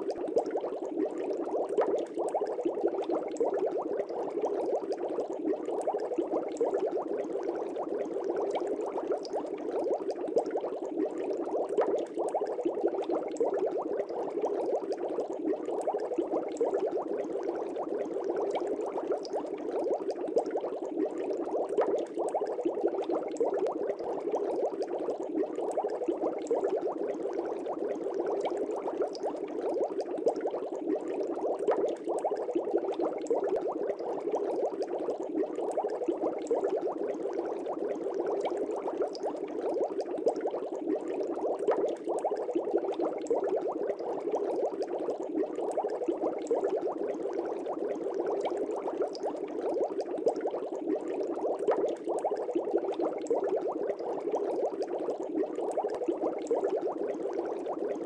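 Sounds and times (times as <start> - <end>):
aquarium water bubbling: 0.0 - 58.0.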